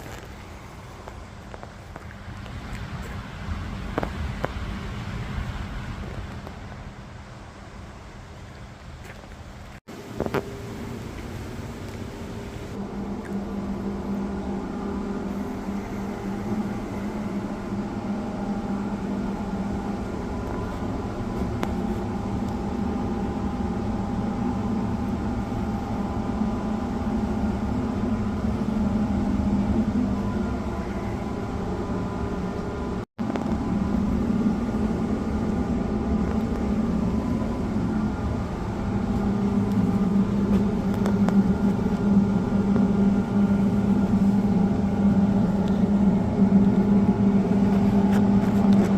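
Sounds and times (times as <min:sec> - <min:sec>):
steady machine hum: 0:09.8 - 0:48.9.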